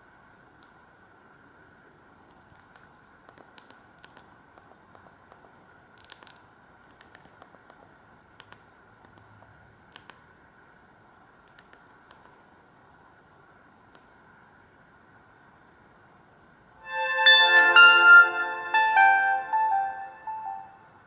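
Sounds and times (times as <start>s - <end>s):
faint hum: 0.0s - 21.0s
low steady hiss: 0.0s - 21.0s
faint irregular clicks: 1.9s - 10.2s, 11.4s - 12.5s.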